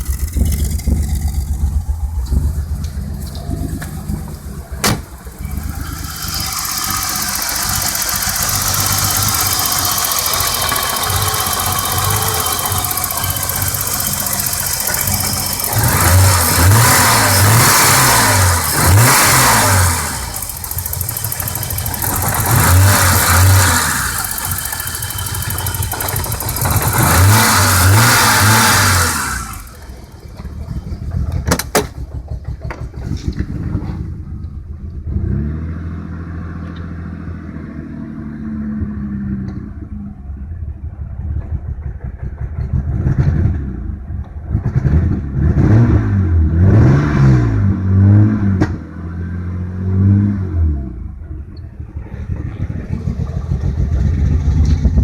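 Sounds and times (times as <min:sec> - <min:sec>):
car engine rough idle: 0:00.0 - 0:35.2, 0:36.6 - 0:45.4, 0:50.7 - 0:55.0
car engine revving: 0:00.0 - 0:55.0.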